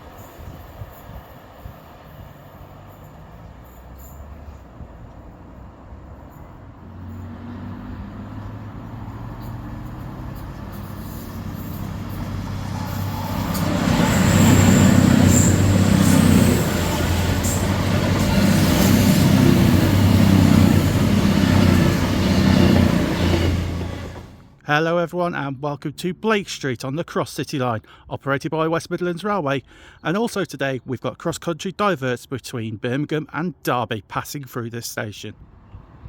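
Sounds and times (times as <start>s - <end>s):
train rumbling into station: 0.0s - 24.6s.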